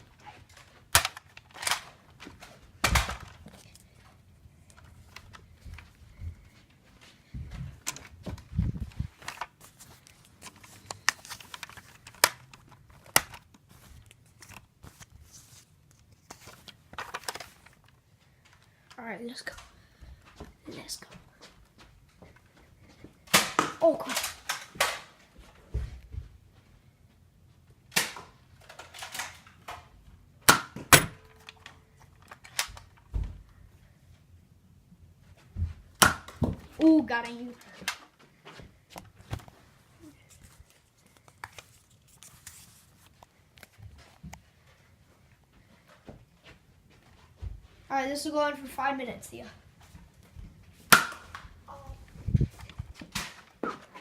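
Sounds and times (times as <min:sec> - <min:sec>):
rustling handling noise: 0:00.0 - 0:19.8, 0:36.6 - 0:47.9
toy dart blasters snapping: 0:23.3 - 0:25.1, 0:27.9 - 0:28.3, 0:30.5 - 0:31.2.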